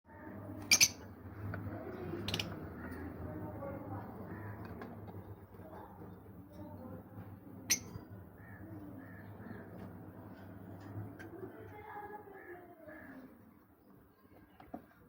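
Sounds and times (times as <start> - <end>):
steady low hum: 0.1 - 12.0
lovebirds calling harshly: 0.6 - 1.2, 7.6 - 10.0.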